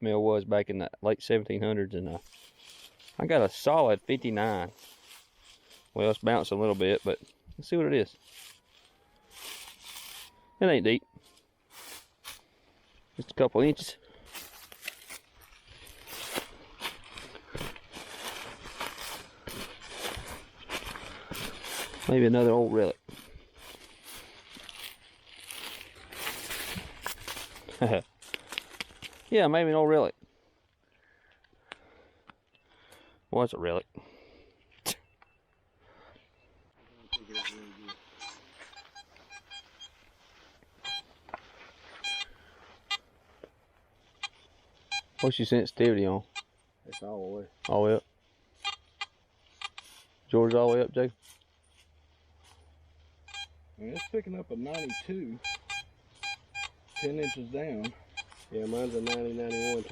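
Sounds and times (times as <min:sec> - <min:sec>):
metal detector beeps: 0:03.2 - 0:05.2, 0:15.8 - 0:24.9, 0:34.9 - 0:35.7, 0:36.4 - 0:40.1, 0:40.8 - 0:41.2, 0:41.8 - 0:43.0, 0:44.1 - 0:45.5, 0:46.2 - 0:48.0, 0:48.6 - 0:51.0, 0:53.2 - 0:59.9
digging tool crunching soil: 0:09.3 - 0:10.4, 0:11.7 - 0:12.5, 0:13.6 - 0:29.3.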